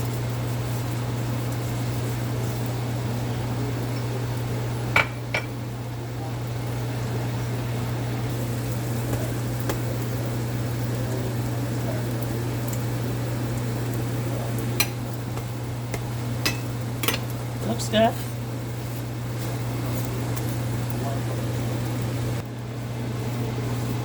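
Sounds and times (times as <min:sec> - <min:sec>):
steady low hum: 0:07.9 - 0:23.5
utensil clinking against pan: 0:14.8 - 0:17.3.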